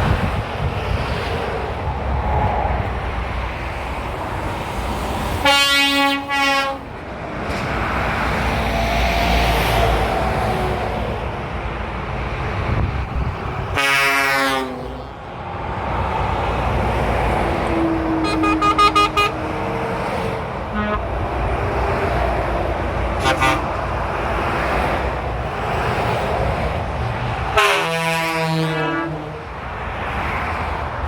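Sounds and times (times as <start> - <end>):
steady traffic noise: 0.0 - 31.0
truck horns: 5.4 - 7.0, 13.1 - 15.3, 17.9 - 21.7, 23.1 - 24.2, 27.5 - 29.6.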